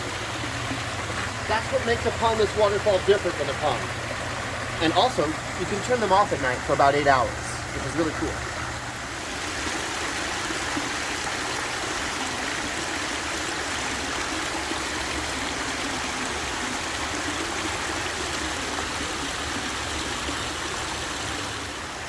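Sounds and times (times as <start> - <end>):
water falling over rocks: 0.0 - 22.0.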